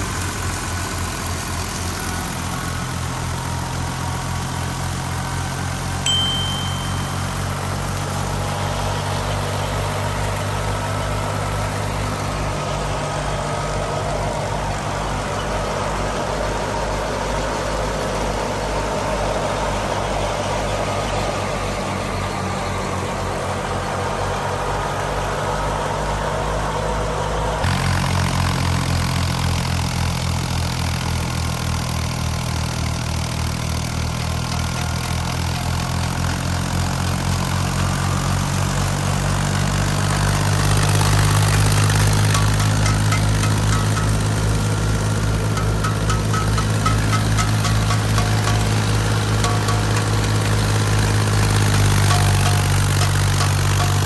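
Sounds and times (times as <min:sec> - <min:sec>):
tractor diesel engine drone: 0:00.0 - 0:54.0
thresher machinery noise: 0:37.5 - 0:54.0.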